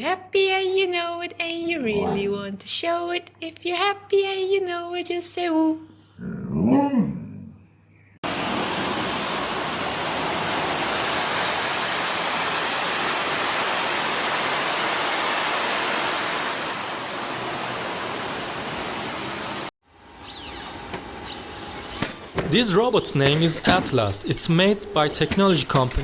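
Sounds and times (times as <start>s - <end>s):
loud rushing noise with high whine: 8.2s - 19.7s.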